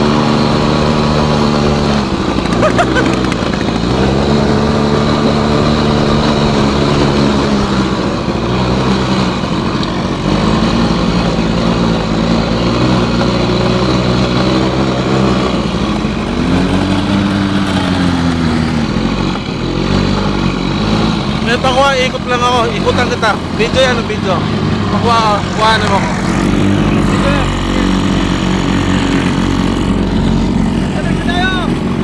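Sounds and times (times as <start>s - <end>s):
atv engine revving: 0.0s - 32.0s.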